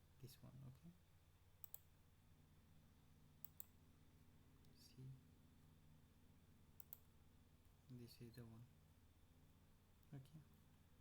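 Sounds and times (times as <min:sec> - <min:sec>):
faint low hum: 0:00.0 - 0:11.0
computer mouse clicks: 0:01.6 - 0:01.9, 0:03.4 - 0:03.8, 0:06.8 - 0:07.1.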